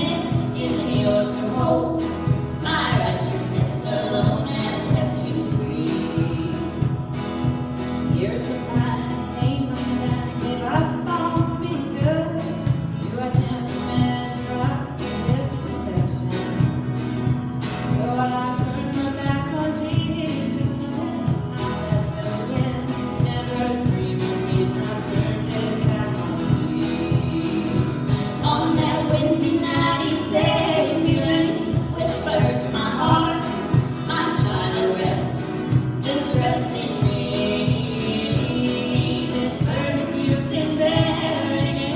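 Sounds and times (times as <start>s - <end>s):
person singing: 0.0s - 16.6s, 17.8s - 41.9s
strummed accompaniment: 0.0s - 41.9s
band playing a song: 20.6s - 41.9s.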